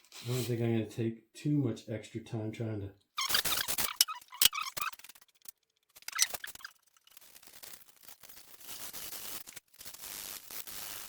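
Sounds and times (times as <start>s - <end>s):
sandpaper rubbing on steel: 8.6s - 11.0s.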